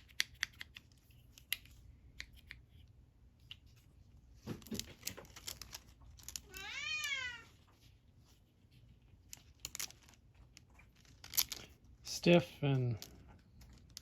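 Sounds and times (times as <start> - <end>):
cat meowing: 6.4 - 7.5.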